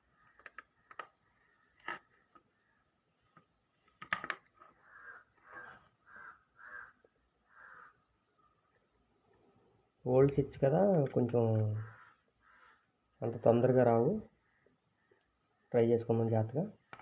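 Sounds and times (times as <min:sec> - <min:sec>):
plastic switch parts clicking: 0:03.3 - 0:04.6.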